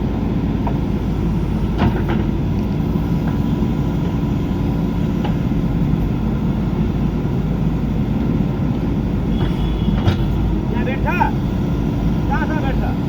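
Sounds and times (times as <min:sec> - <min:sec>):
diesel engine running: 0:00.0 - 0:13.0
faint knocks: 0:09.3 - 0:10.4.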